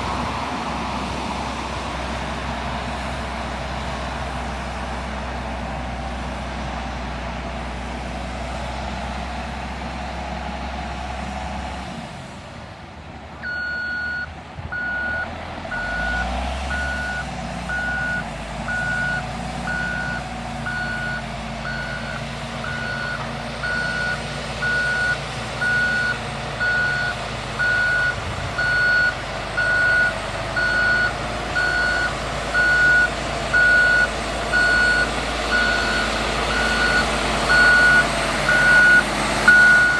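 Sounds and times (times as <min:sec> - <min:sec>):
diesel engine running: 0:00.0 - 0:39.9
reversing alarm beeping: 0:13.4 - 0:39.9.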